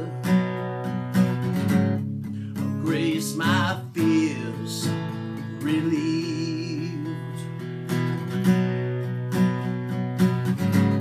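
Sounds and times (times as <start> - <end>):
person singing: 0.0 - 0.5, 2.6 - 7.6
acoustic guitar strumming: 0.0 - 11.0.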